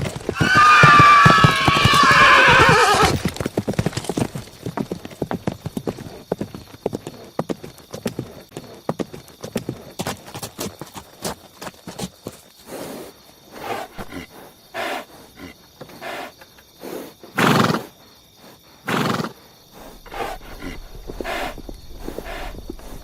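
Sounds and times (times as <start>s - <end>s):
horse neighing: 0.3s - 3.3s.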